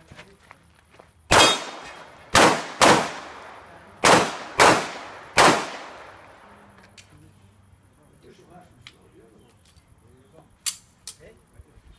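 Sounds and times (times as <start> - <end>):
handgun shots echoing: 1.3 - 6.4.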